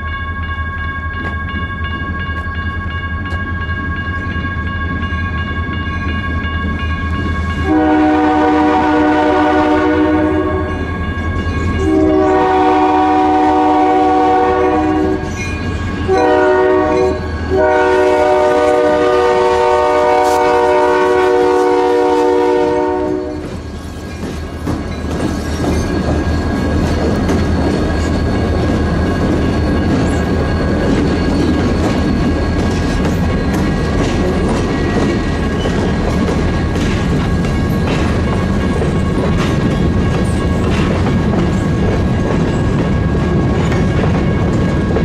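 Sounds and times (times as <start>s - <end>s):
train rumble: 1.0s - 45.0s
train air horn blasts: 7.6s - 10.9s, 11.8s - 15.4s, 16.1s - 23.5s.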